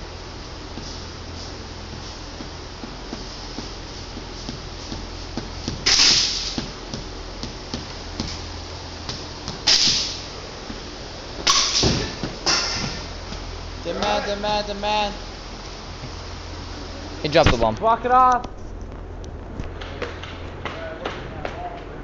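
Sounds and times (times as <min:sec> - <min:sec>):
loud hissing bursts: 0:05.8 - 0:06.8.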